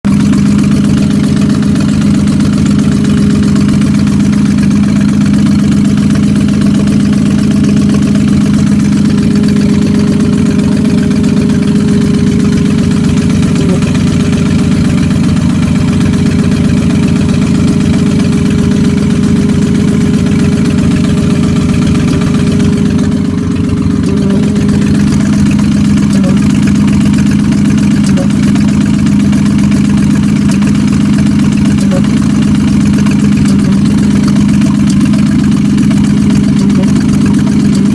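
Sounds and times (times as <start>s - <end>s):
car engine idling: 0.0s - 37.9s.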